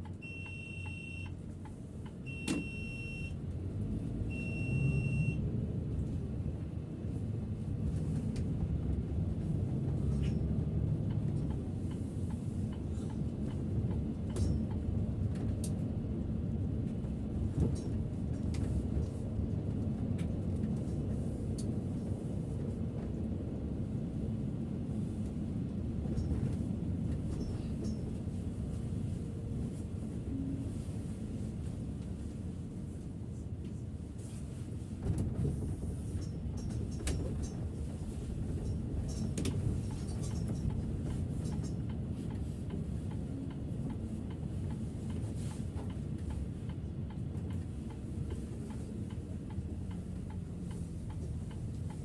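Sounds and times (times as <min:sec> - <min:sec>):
bus engine rumble: 0:00.0 - 0:52.0
electronic beep: 0:00.2 - 0:01.3, 0:02.3 - 0:03.3, 0:04.4 - 0:05.4.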